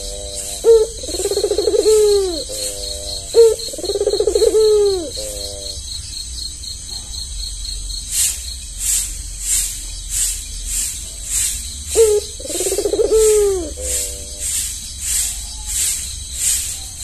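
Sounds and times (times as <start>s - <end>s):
dove cooing: 0.0s - 5.8s, 11.9s - 14.6s.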